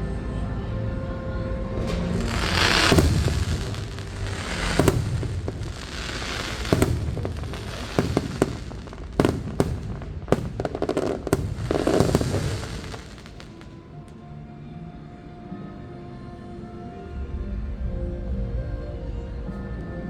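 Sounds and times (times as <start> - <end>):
fireworks crackling: 1.3 - 13.9
fireworks bangs: 1.7 - 13.8.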